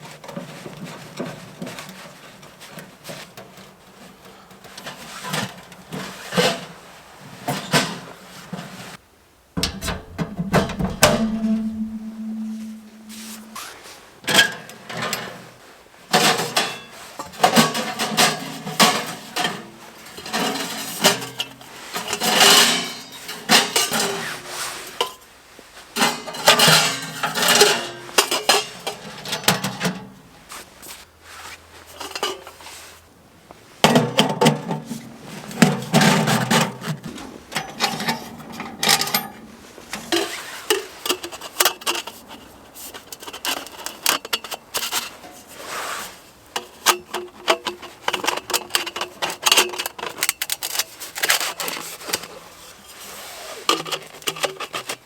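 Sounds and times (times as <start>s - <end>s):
metal cookware clinking: 9.6s - 13.6s.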